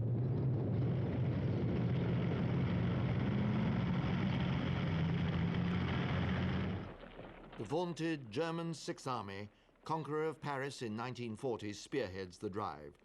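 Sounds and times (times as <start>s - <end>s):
heavy vehicle engines rumbling: 0.0s - 6.9s.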